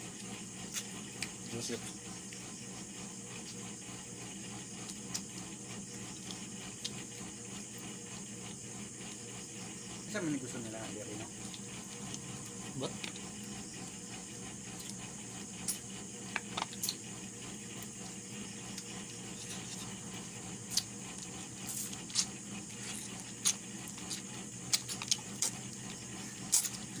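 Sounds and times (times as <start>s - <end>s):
steady background hum: 0.0s - 27.0s
chewing and food handling clicks: 0.2s - 2.5s, 4.8s - 5.5s, 6.1s - 7.3s, 11.3s - 13.6s, 14.7s - 15.0s, 15.6s - 17.1s, 17.7s - 27.0s.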